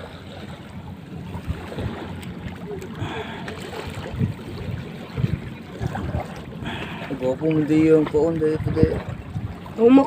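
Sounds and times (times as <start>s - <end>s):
water sloshing and lapping: 0.0s - 10.0s
wind noise on microphone: 3.9s - 6.8s, 8.3s - 10.0s.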